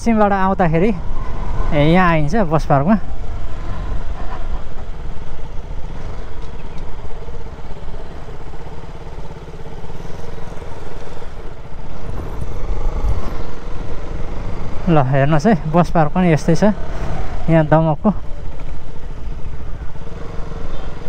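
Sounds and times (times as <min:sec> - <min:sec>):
motorcycle engine running: 0:03.0 - 0:21.0
wind rushing over microphone: 0:11.2 - 0:14.9.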